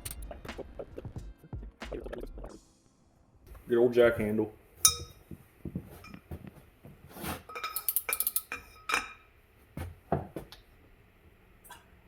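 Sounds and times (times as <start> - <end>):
steel tools clinking: 4.8 - 5.2, 7.5 - 9.2.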